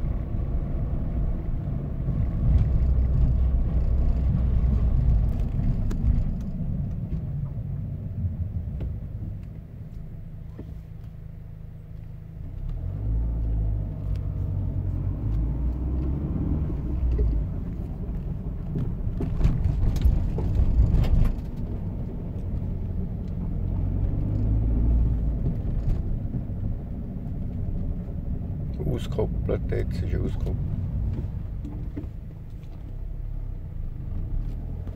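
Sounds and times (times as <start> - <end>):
low drivetrain rumble: 0.0 - 34.9
gearbox rattling knocks: 17.0 - 21.9.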